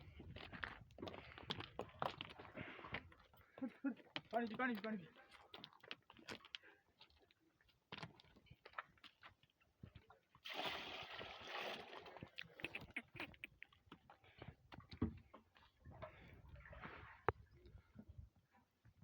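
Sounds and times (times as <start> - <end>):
water splashing and sloshing: 8.0 - 18.2.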